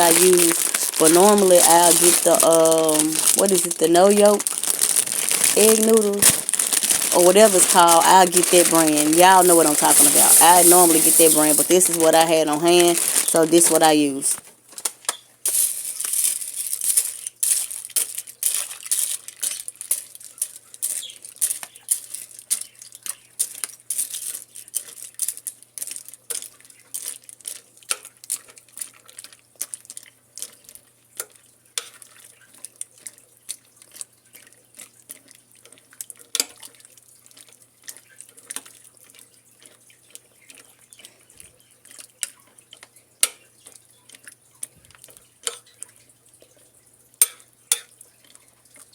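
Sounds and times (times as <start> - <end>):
plastic bag crinkling: 0.0 - 30.6.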